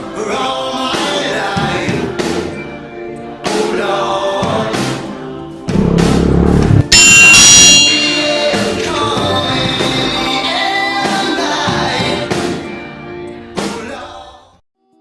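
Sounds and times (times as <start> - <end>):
music with singing: 0.0 - 6.8, 7.8 - 15.0.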